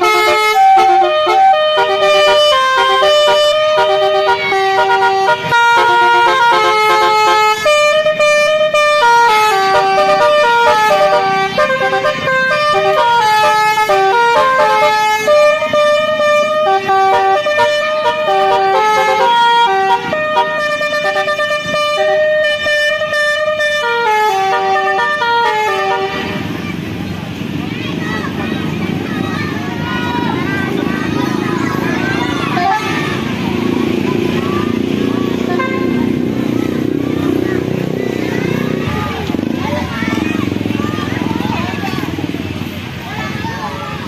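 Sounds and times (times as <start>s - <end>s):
musical bus horn tune: 0.0s - 26.6s, 32.2s - 34.3s, 35.2s - 37.0s.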